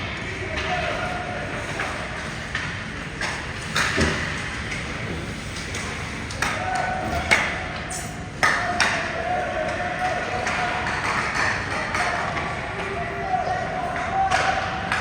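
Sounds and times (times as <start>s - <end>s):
spectators chattering in hall: 0.0s - 3.2s, 4.0s - 15.0s.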